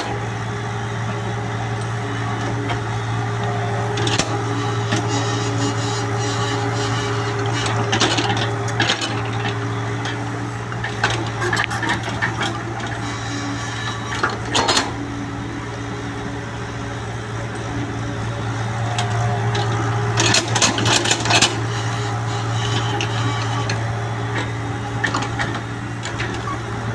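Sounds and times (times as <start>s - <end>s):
excavator diesel engine droning: 0.0s - 26.9s
excavator bucket clattering and scraping: 3.8s - 15.4s, 18.8s - 26.9s.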